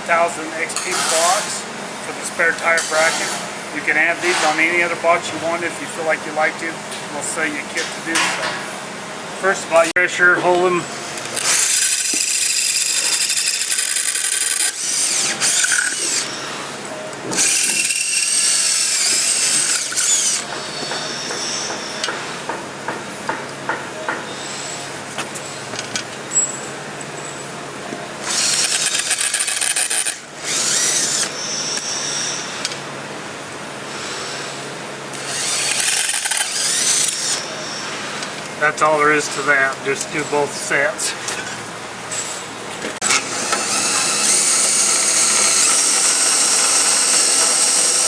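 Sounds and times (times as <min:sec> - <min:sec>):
electric drill whining: 0:11.3 - 0:22.1, 0:28.2 - 0:32.7, 0:33.9 - 0:38.2, 0:43.0 - 0:48.0.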